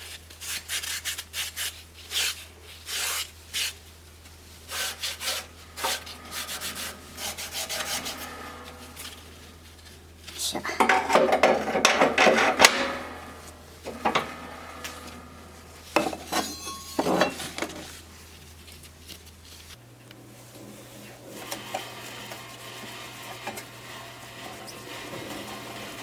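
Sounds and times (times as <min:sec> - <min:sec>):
steady low hum: 0:02.5 - 0:21.4
hard objects clinking and clattering: 0:15.9 - 0:17.9.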